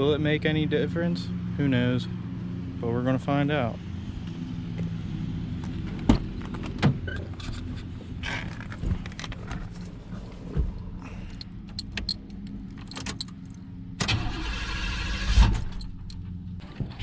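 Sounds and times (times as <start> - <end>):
car engine idling: 0.0 - 17.0
engine clicks and knocks: 5.7 - 17.0.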